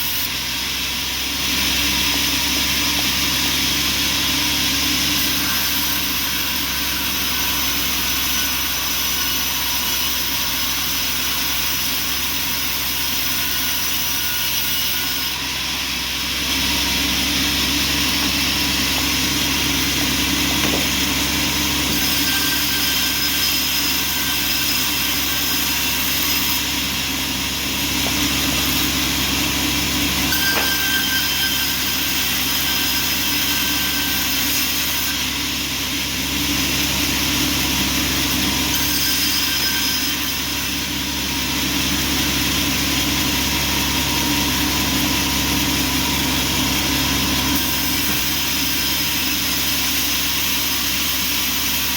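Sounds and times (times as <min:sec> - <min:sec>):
bandsaw mill drone: 0:00.0 - 0:38.7.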